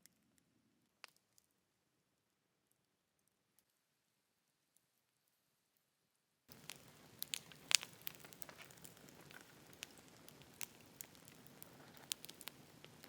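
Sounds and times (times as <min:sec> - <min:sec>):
campfire crackling and popping: 0:06.5 - 0:13.0
fire hissing: 0:06.5 - 0:13.0.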